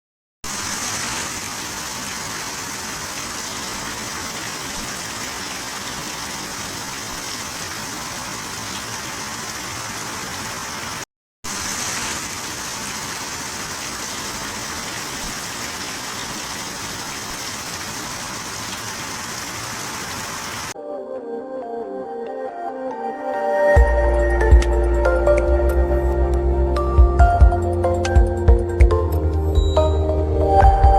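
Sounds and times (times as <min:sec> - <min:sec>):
heavy rain falling: 0:00.5 - 0:20.8.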